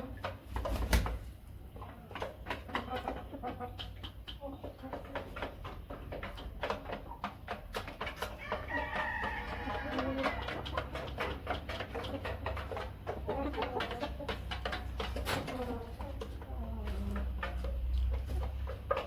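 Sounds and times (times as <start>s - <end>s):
rooster crowing: 8.4s - 10.4s.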